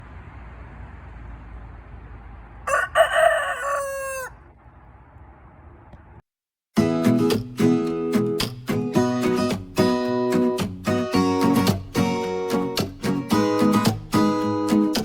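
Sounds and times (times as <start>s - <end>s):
rooster crowing: 2.6s - 4.6s.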